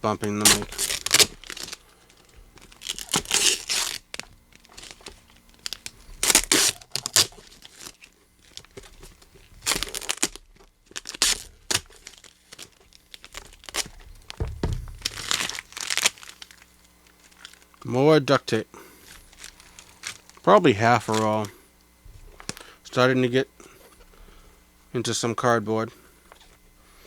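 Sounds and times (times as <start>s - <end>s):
crinkling packaging: 0.2s - 17.7s, 19.0s - 21.6s
duct tape ripping: 0.4s - 1.8s, 2.6s - 8.9s, 9.6s - 16.6s
low thump: 13.9s - 15.5s.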